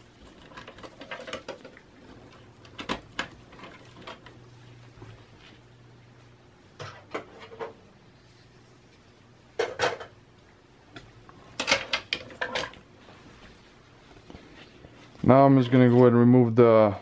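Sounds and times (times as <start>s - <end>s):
computer parts clicking and clattering: 11.6s - 12.8s.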